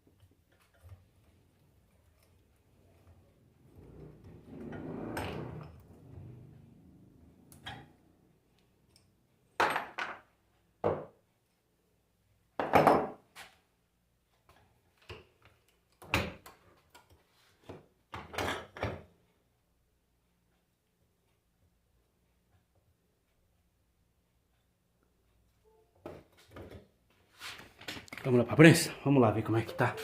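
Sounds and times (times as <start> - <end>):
tools knocking and clattering: 12.6 - 13.2, 17.7 - 19.1.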